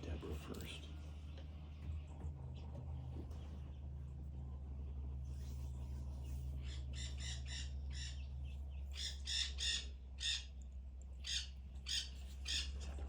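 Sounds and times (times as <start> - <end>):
low steady hum: 0.0 - 13.0
parrots squawking: 6.6 - 10.6, 11.2 - 12.9.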